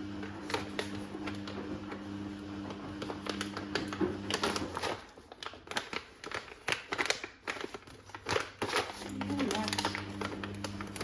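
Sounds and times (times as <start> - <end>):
electrical hum: 0.0 - 5.0, 9.0 - 11.0.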